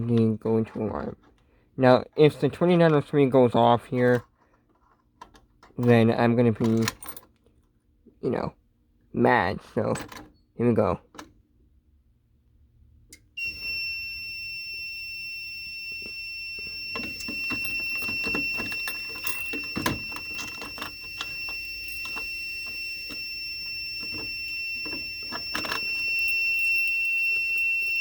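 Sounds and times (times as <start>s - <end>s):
high-pitched electronic alarm tone: 13.4s - 28.0s
irregular clicks and knocks: 16.0s - 28.0s.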